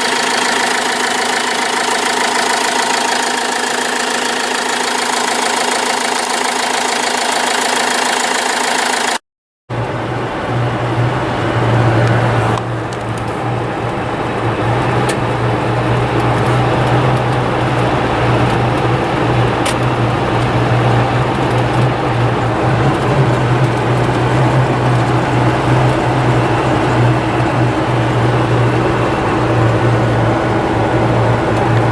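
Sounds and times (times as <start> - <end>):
diesel engine idling: 0.0 - 31.9.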